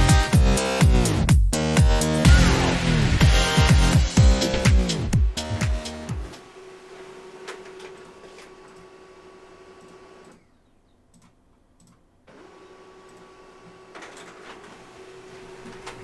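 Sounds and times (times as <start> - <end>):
soft clicks: 11.1 - 12.1.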